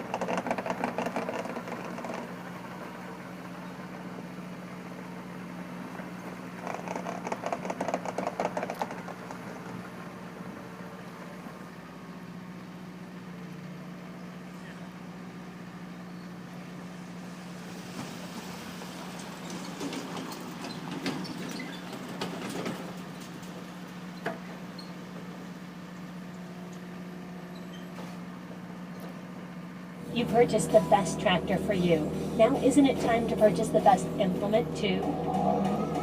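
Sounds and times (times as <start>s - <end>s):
rapid mechanical rattle: 0.0s - 3.0s, 6.5s - 9.9s
diesel engine idling: 0.0s - 20.8s, 22.8s - 36.0s.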